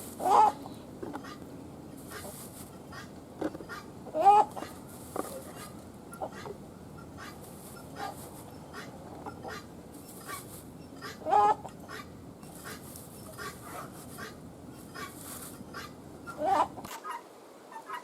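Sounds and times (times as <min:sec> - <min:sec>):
hen clucking: 0:00.0 - 0:18.0
chicks peeping: 0:00.1 - 0:17.2.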